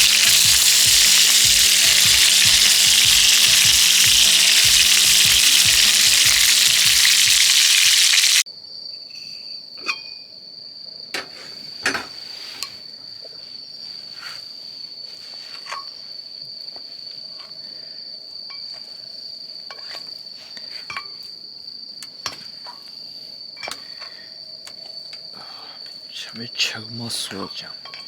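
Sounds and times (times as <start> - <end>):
meat sizzling in a hot pan: 0.0 - 8.4
high insect trill: 0.0 - 28.0.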